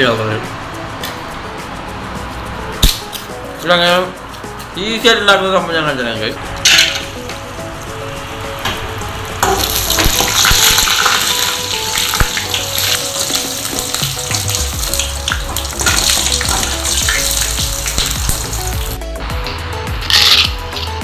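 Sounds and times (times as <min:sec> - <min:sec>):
background music: 0:00.0 - 0:21.0.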